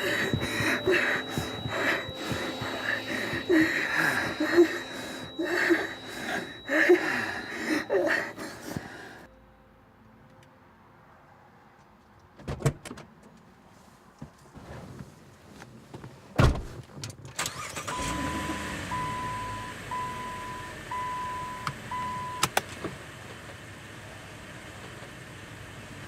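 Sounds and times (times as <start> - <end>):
car warning chime beeping: 0.0 - 9.3, 17.7 - 22.5.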